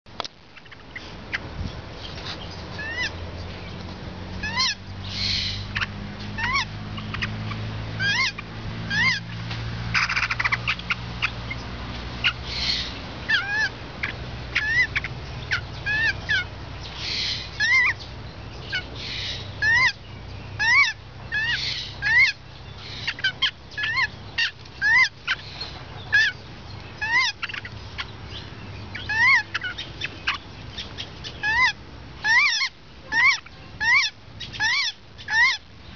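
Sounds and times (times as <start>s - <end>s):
low steady hum: 0.1s - 35.9s
bird chicks chirping: 0.3s - 35.9s
raspy hissing bird calls: 4.5s - 8.4s, 12.2s - 18.0s, 18.7s - 20.0s, 20.6s - 35.6s.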